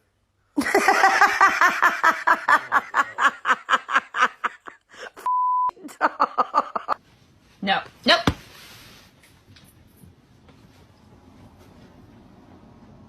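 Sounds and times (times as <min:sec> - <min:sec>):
rapid rhythmic laughter: 0:00.6 - 0:05.2
censor beep: 0:05.3 - 0:05.7.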